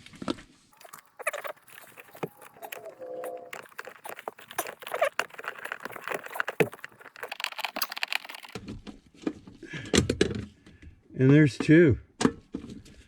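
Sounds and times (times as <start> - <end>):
rustling handling noise: 0.8 - 8.6.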